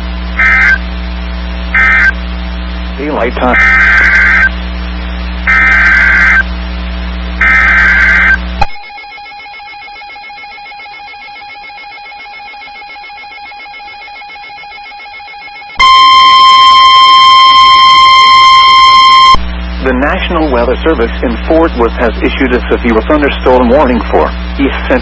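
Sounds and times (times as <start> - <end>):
hum: 0.0 - 25.0
loud steady warning alarm tone: 0.0 - 25.0
harsh digital tone bursts: 0.4 - 0.8, 1.7 - 2.2, 3.0 - 4.5, 5.4 - 6.4, 7.4 - 8.4.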